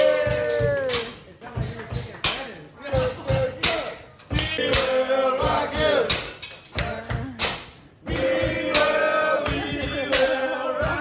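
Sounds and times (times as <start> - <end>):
music with regular beat: 0.0 - 11.0.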